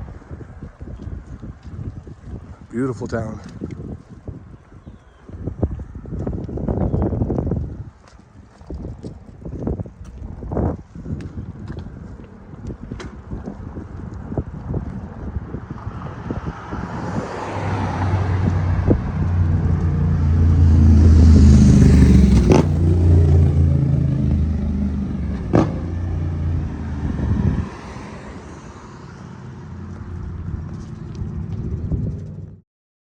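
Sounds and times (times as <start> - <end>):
vehicle engine passing by: 15.3 - 32.6.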